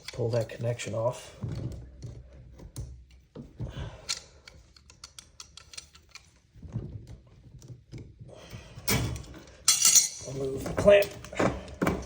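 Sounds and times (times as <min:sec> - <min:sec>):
pliers clicking on hose clamp: 0:04.0 - 0:06.4.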